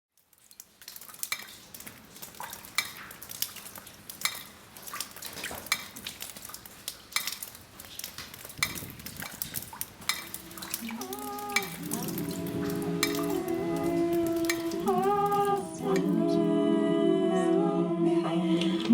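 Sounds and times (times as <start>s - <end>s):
sharp clicks and crackle: 0.1s - 15.5s
voices humming sliding notes: 10.4s - 18.9s.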